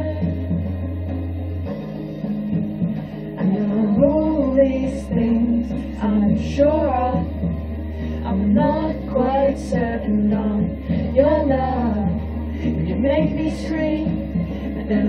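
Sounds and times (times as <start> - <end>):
slow song with sung vocals: 0.0 - 15.0
sustained bass notes: 0.0 - 15.0.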